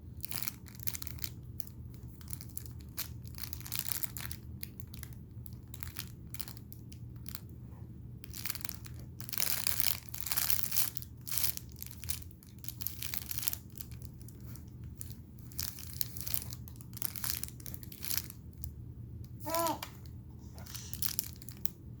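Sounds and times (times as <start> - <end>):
low steady hum: 0.0 - 22.0
crinkling and rustling: 0.2 - 18.8, 19.5 - 21.8
short high vocal sound: 19.4 - 19.9.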